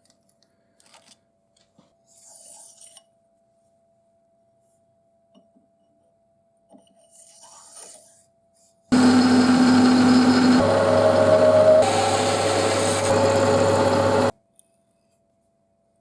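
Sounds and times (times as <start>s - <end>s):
machine tool whining: 8.9s - 14.3s.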